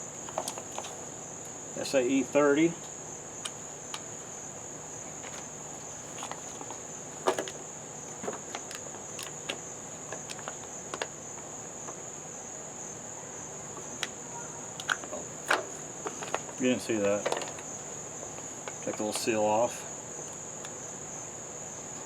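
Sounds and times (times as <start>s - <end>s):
crickets chirping: 0.0s - 22.0s
handling clicks and knocks: 0.2s - 1.0s, 5.1s - 11.1s, 14.8s - 17.7s, 18.3s - 19.4s.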